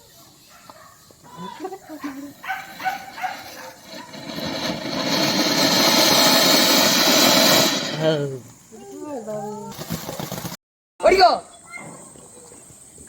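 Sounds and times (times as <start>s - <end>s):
firework fountain hissing: 2.2s - 8.7s.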